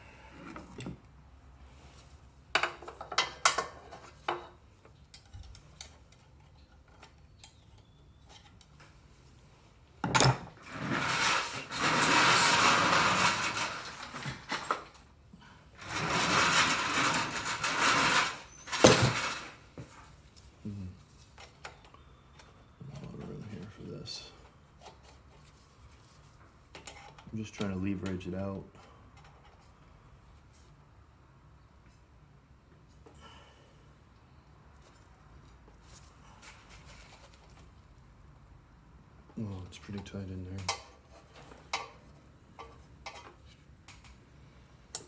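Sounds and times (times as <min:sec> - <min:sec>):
metal tools clattering: 0:15.8 - 0:19.6.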